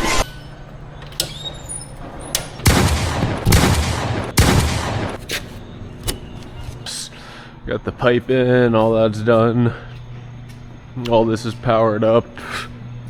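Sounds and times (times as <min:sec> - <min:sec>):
loud sharp bangs: 0:02.6 - 0:05.3.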